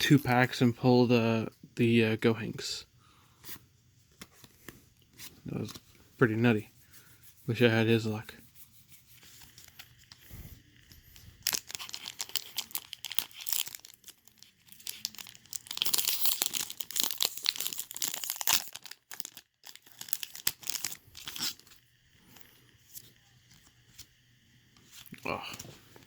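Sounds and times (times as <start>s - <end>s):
foil pack tearing and crinkling: 11.3s - 21.8s.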